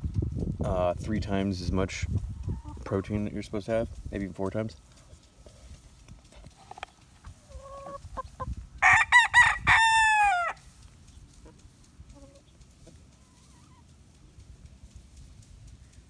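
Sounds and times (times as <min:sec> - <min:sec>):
soft chicken clucks: 0:02.2 - 0:03.3, 0:04.8 - 0:16.0
rooster crowing: 0:08.8 - 0:10.6.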